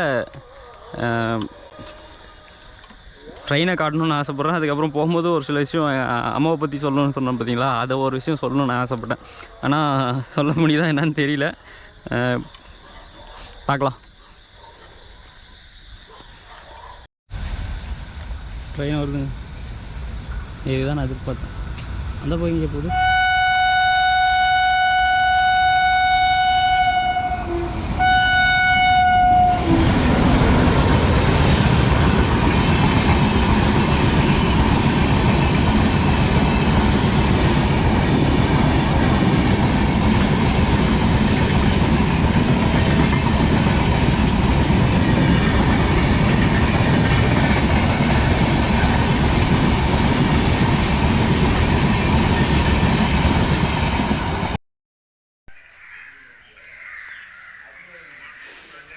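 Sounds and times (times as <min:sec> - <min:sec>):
train horn blasts: 0:22.8 - 0:30.6
train wheels clattering on rails: 0:29.8 - 0:54.3.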